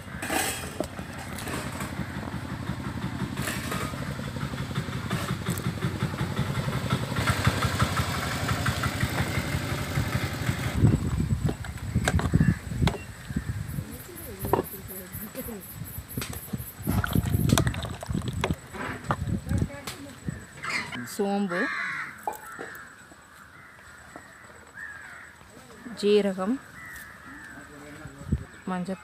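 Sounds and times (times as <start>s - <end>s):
small engine puttering: 0.1s - 12.4s, 16.2s - 19.7s.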